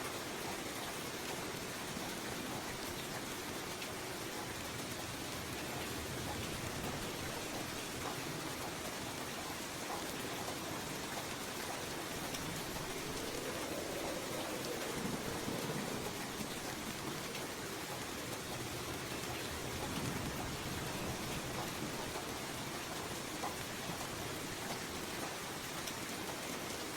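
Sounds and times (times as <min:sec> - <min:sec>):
steady rain falling: 0:00.0 - 0:26.9.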